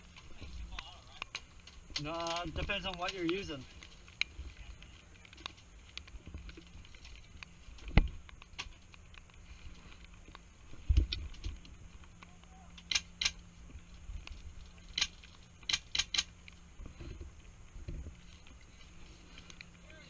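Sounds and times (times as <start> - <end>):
sharp clicks: 0.7 - 6.2, 10.0 - 13.4, 14.2 - 16.6.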